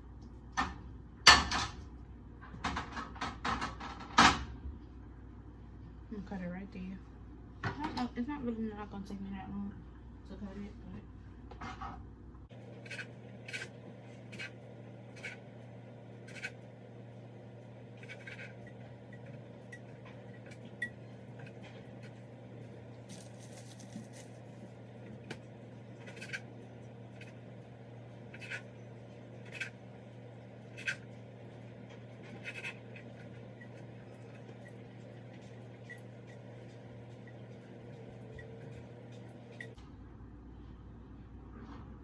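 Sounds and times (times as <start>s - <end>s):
steady low hum: 0.0s - 42.0s
knife scraping: 12.7s - 15.5s, 16.2s - 16.6s, 18.0s - 22.2s, 25.9s - 26.5s, 28.3s - 29.8s, 32.0s - 37.6s.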